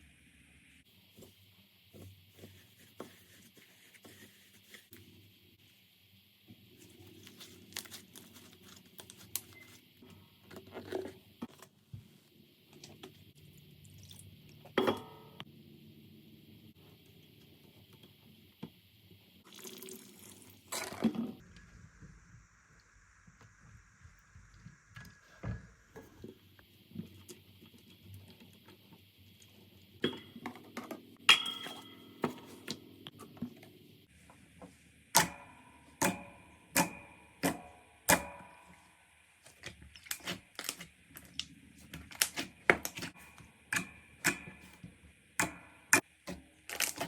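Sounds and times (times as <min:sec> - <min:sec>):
slime squelches: 0:39.4 - 0:43.2.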